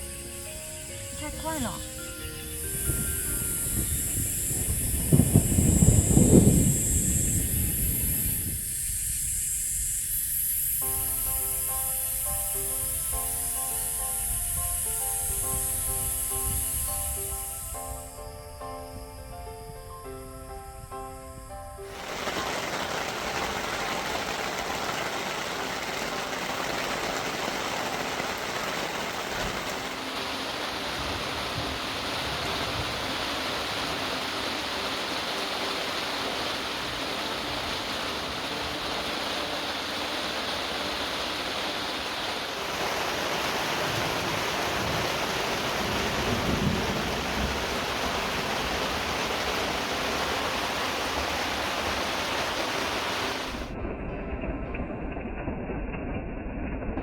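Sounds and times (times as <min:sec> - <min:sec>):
heavy rain falling: 0:02.6 - 0:08.0, 0:21.9 - 0:53.8.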